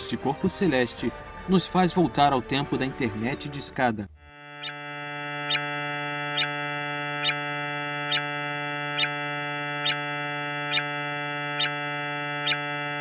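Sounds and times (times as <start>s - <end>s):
electronic drone of stacked tones: 8.0s - 12.8s.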